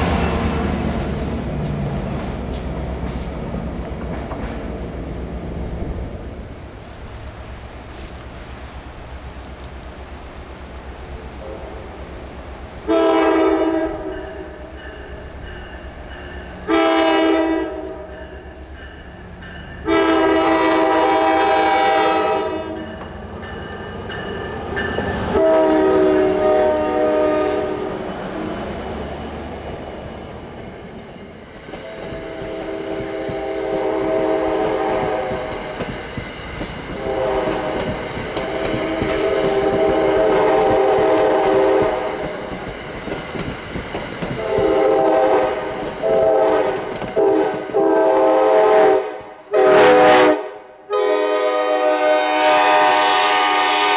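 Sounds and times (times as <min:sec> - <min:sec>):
wheels clattering on rail: 0:00.0 - 0:11.3, 0:34.4 - 0:48.2
train air horn blasts: 0:11.4 - 0:12.0, 0:12.8 - 0:15.2, 0:16.6 - 0:18.4, 0:19.8 - 0:23.0, 0:25.3 - 0:28.4, 0:31.8 - 0:35.7, 0:36.6 - 0:42.6, 0:44.3 - 0:53.9.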